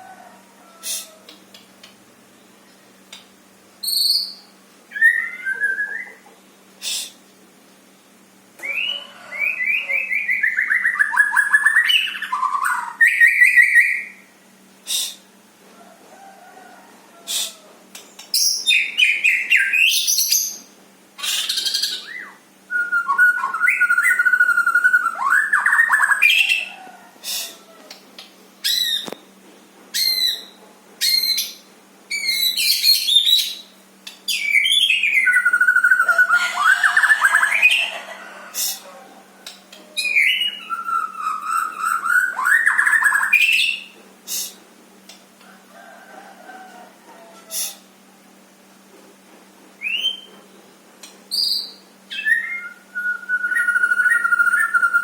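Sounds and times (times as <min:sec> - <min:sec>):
bird singing whistles and warbles: 0:03.8 - 0:06.2, 0:08.6 - 0:14.2, 0:18.3 - 0:26.7, 0:30.0 - 0:33.7, 0:34.3 - 0:37.8, 0:40.0 - 0:44.4, 0:49.8 - 0:50.4, 0:51.3 - 0:55.0.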